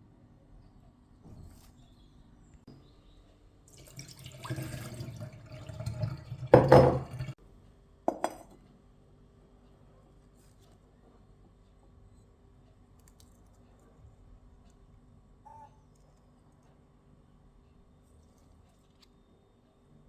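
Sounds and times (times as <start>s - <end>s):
water running: 3.7s - 7.4s
dishware clinking: 6.0s - 7.4s, 8.1s - 8.6s.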